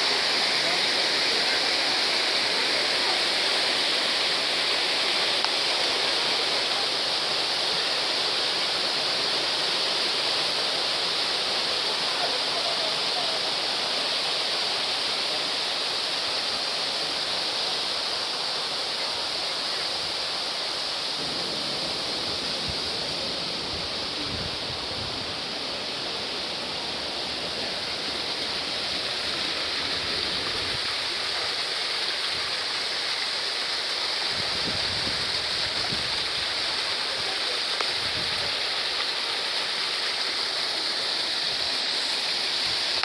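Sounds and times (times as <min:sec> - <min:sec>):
stream rushing over rocks: 0:00.0 - 0:43.0.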